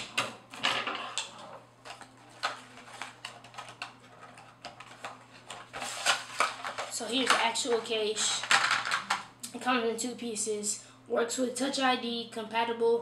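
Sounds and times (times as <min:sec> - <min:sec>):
packaging rustling: 0:01.2 - 0:09.2.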